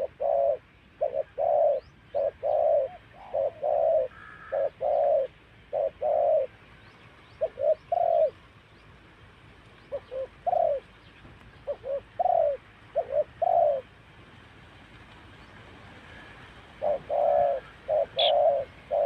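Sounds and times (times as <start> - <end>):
dove cooing: 0.0 - 6.6, 7.4 - 8.4, 9.9 - 11.0, 11.6 - 14.0, 15.8 - 19.0.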